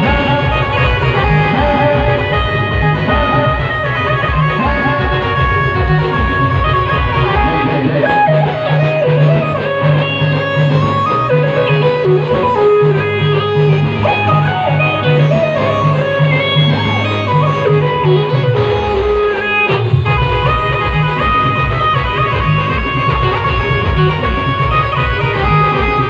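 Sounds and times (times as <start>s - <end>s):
repeating bass beat: 0.0s - 11.0s
plucked string melody: 0.0s - 26.0s.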